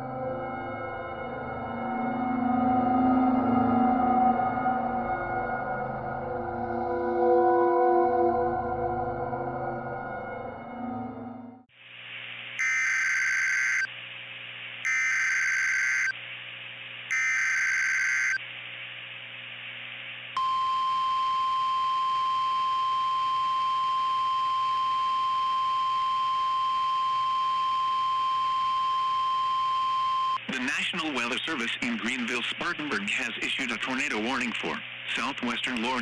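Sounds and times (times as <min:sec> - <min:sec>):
electronic data tone screech: 0:12.6 - 0:13.9, 0:14.8 - 0:16.2, 0:17.1 - 0:18.4.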